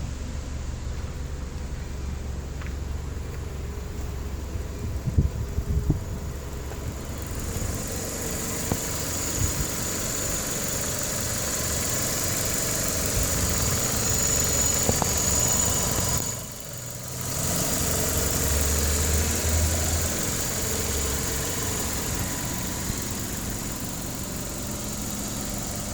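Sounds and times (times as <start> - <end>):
car engine idling: 0.0 - 25.9.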